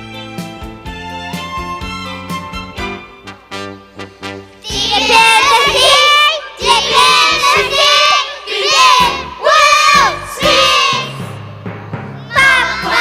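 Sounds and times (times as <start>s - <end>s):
instrumental backing: 0.0s - 13.0s
child singing: 4.7s - 11.3s, 12.3s - 13.0s.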